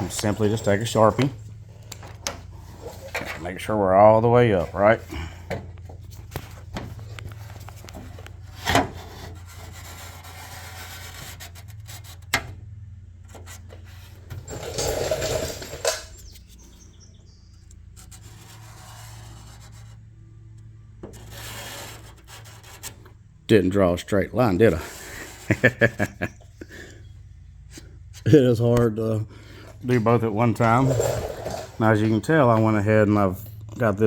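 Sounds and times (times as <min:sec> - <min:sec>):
steady low hum: 0:00.0 - 0:34.0
marker scraping on metal: 0:08.6 - 0:12.4, 0:17.6 - 0:20.1, 0:21.1 - 0:23.1.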